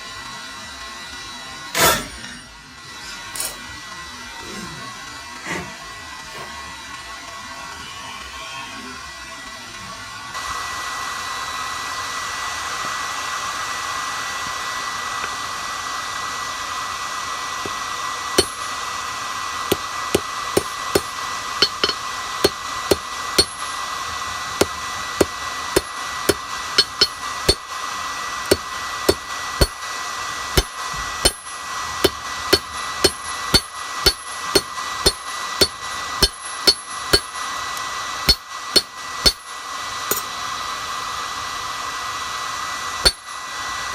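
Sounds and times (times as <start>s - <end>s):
forge hissing: 10.4s - 43.9s
hammer striking steel on anvil: 18.4s - 18.7s, 19.7s - 23.8s, 24.6s - 27.7s, 28.4s - 29.8s, 30.6s - 37.4s, 38.3s - 39.5s, 40.1s - 40.3s, 43.0s - 43.3s.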